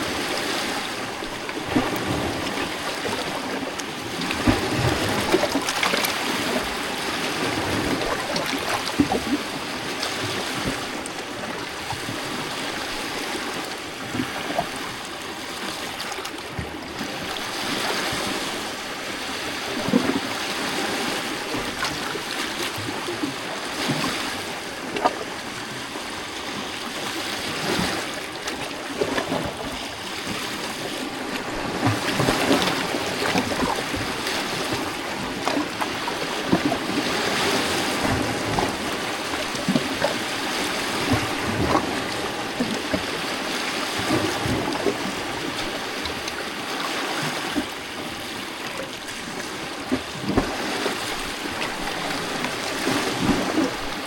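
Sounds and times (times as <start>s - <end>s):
waves lapping against rocks: 0.0s - 54.0s.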